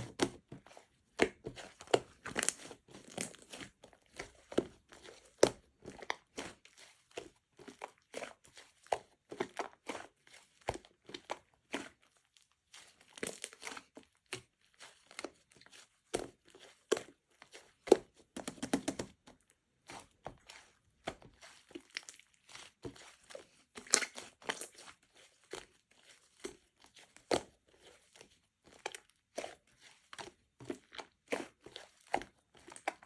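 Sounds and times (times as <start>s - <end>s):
crinkly material rustling: 0.0s - 8.0s.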